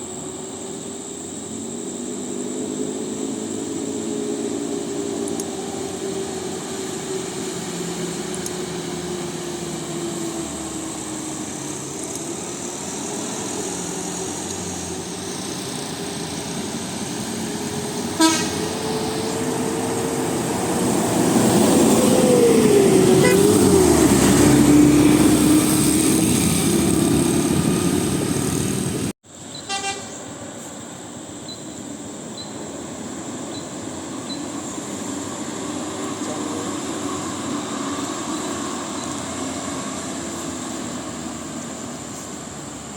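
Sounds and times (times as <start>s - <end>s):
bus engine passing: 0.0s - 42.9s
bus horn toot: 18.2s - 18.8s, 23.2s - 23.6s, 29.6s - 30.2s.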